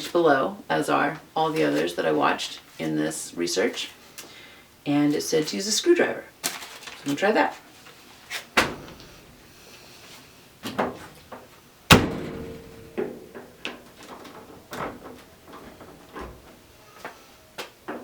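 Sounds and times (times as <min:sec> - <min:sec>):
metallic ring: 0:12.3 - 0:13.4.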